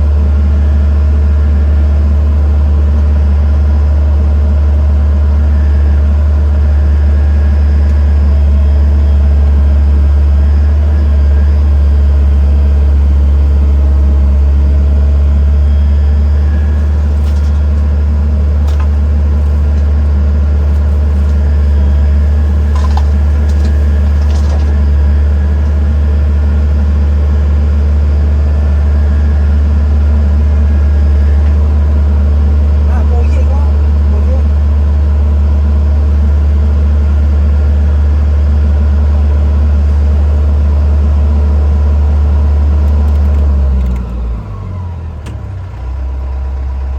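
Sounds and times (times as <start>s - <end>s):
diesel engine running: 0.0s - 46.9s
short knocks: 16.5s - 25.8s.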